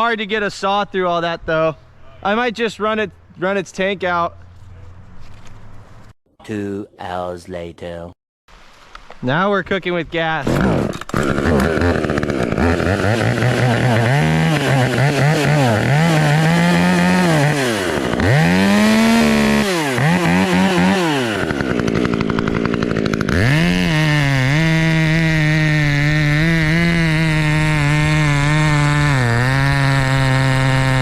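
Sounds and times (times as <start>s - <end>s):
chainsaw revving and cutting: 10.4s - 31.0s.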